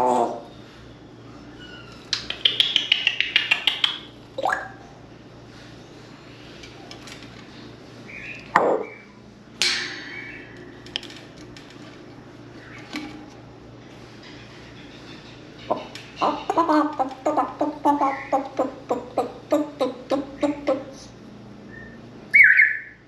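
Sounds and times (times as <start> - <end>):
parrot clicks: 2.1 - 4.1.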